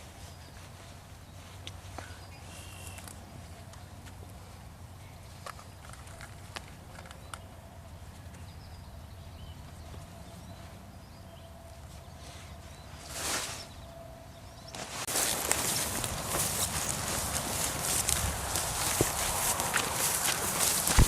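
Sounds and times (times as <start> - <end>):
brief rustle: 14.8 - 21.0
footsteps crunching: 14.8 - 21.0.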